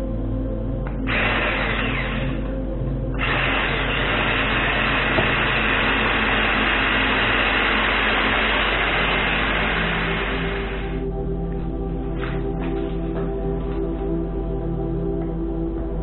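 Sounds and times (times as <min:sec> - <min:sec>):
electric mixer running: 0:01.0 - 0:11.1.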